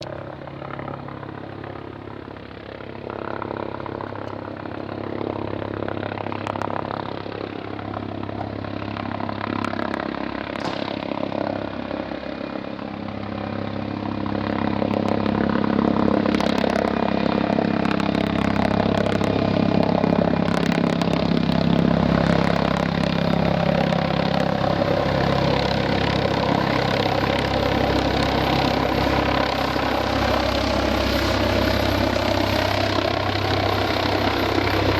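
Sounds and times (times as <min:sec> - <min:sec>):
helicopter engine and rotor: 0:00.0 - 0:34.9.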